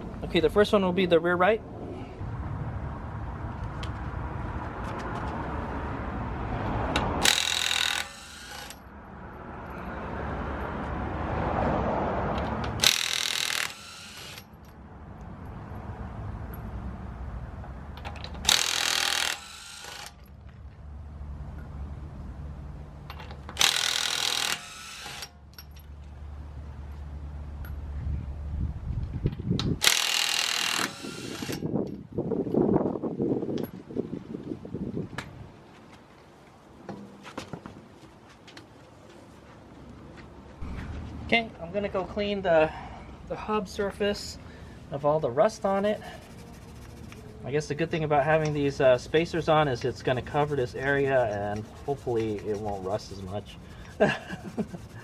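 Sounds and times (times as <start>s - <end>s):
power tool bursts on lug nuts: 7.2s - 8.8s, 12.7s - 14.5s, 18.4s - 20.2s, 23.5s - 25.4s, 29.8s - 31.7s.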